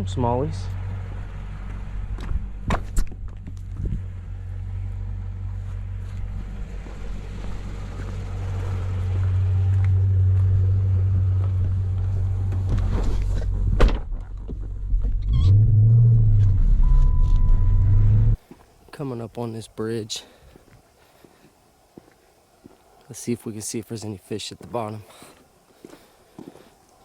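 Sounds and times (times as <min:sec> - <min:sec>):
vehicle passing: 0:00.0 - 0:13.3
road traffic rumble: 0:00.0 - 0:19.0.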